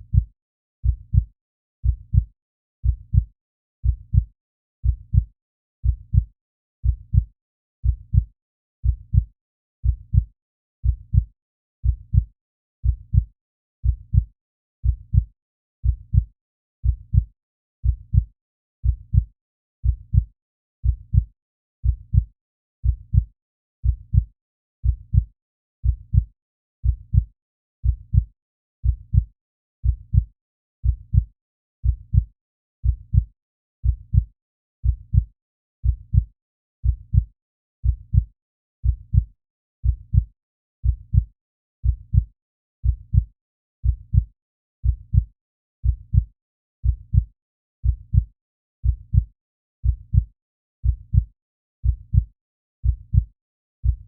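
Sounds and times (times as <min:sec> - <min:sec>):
heartbeat double thump: 0:36.8 - 0:37.2, 0:37.8 - 0:38.2, 0:38.8 - 0:39.2, 0:39.8 - 0:40.2, 0:40.8 - 0:41.2, 0:41.8 - 0:42.2, 0:42.8 - 0:43.2, 0:43.8 - 0:44.2, 0:44.8 - 0:45.2, 0:45.8 - 0:46.2, 0:46.8 - 0:47.2, 0:47.8 - 0:48.2, 0:48.8 - 0:49.2, 0:49.8 - 0:50.2, 0:50.8 - 0:51.2, 0:51.8 - 0:52.2, 0:52.8 - 0:53.2.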